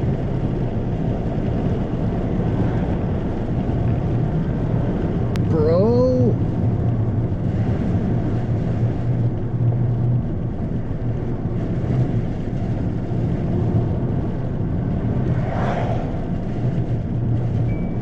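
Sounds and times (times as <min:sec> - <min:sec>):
car engine and road hum: 0:00.0 - 0:18.0.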